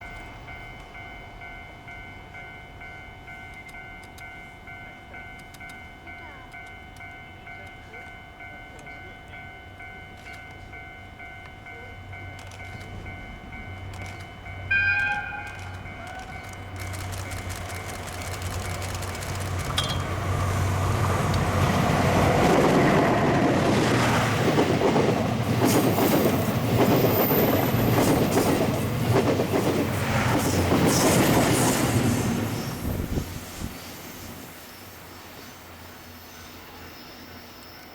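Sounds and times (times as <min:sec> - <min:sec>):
level crossing alarm ringing: 0:00.0 - 0:16.7
train rumble: 0:00.0 - 0:37.6
locomotive horn blast: 0:14.7 - 0:16.4.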